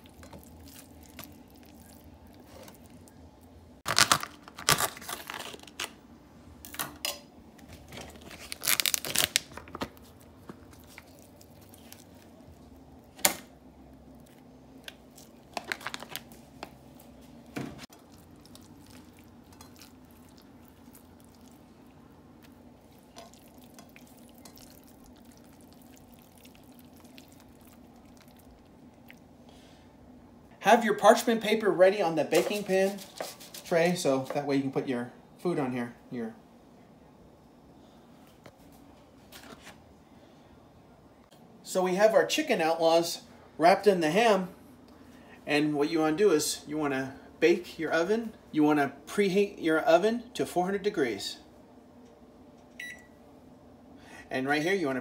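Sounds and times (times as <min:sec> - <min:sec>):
paper tearing and crinkling: 0:03.9 - 0:06.0, 0:08.0 - 0:09.9.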